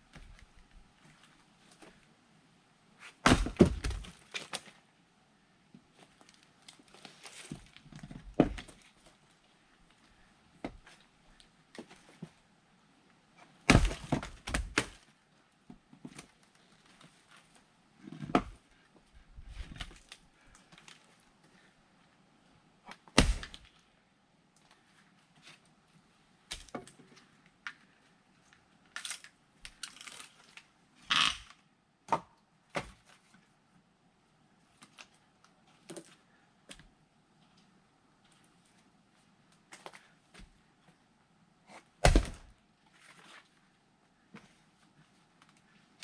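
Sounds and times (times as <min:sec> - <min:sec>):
axe splitting wood: 0:03.2 - 0:04.1, 0:13.7 - 0:14.9, 0:23.1 - 0:23.6, 0:42.0 - 0:42.5.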